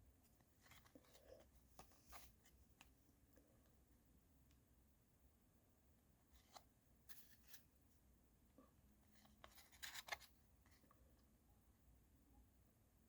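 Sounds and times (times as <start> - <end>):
trading cards rustling: 9.2 - 10.3.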